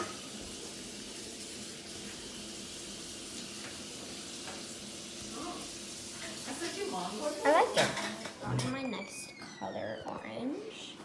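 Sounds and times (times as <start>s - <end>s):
food sizzling in pan: 0.0s - 8.5s.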